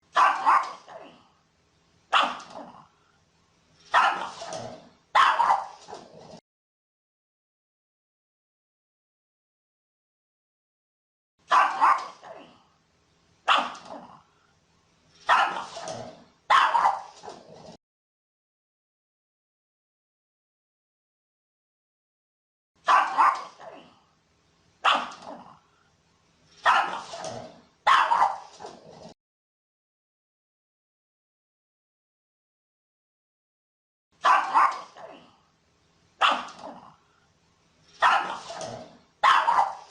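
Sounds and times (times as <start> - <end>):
dog barking: 0.1 - 1.2, 2.1 - 2.8, 3.9 - 6.0, 11.5 - 12.6, 13.5 - 14.2, 15.3 - 17.4, 22.8 - 23.9, 24.8 - 25.6, 26.6 - 28.8, 34.2 - 35.3, 36.2 - 36.9, 38.0 - 39.9.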